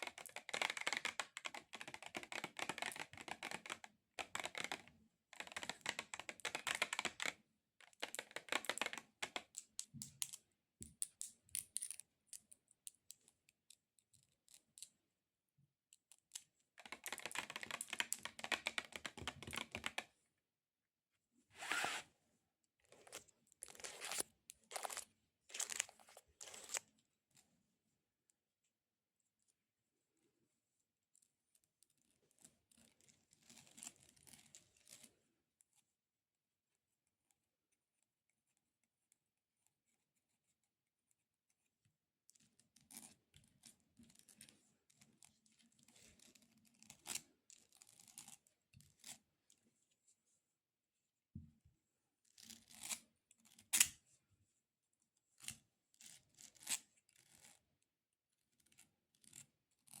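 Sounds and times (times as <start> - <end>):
fingernails scratching on figurine: 21.6 - 22.1.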